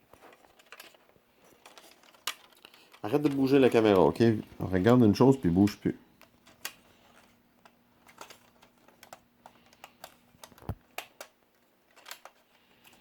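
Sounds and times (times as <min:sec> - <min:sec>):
small plastic and metal clicks: 0:07.6 - 0:13.0.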